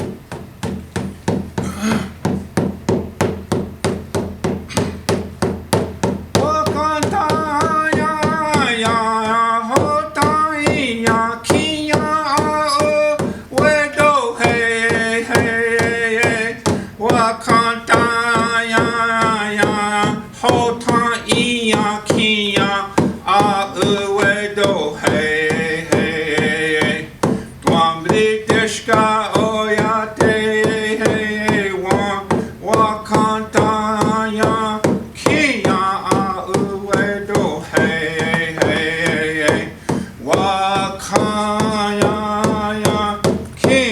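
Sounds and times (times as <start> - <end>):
steady drumbeat: 0.0 - 43.9
man singing: 6.3 - 43.9.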